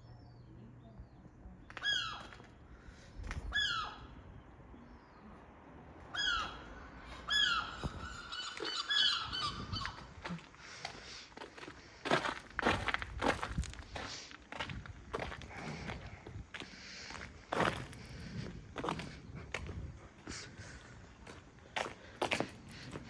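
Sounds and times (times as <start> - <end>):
gulls squawking: 3.5 - 4.2, 6.1 - 10.9.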